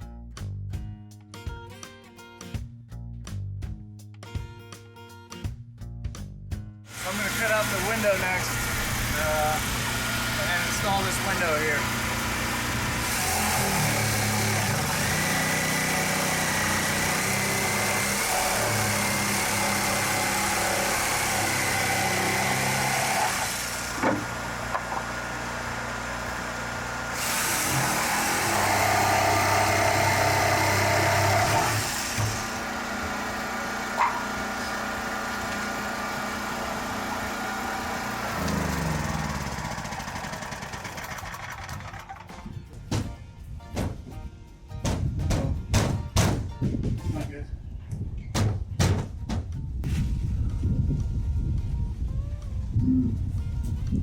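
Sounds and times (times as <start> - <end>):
power saw cutting wood: 6.9 - 42.4.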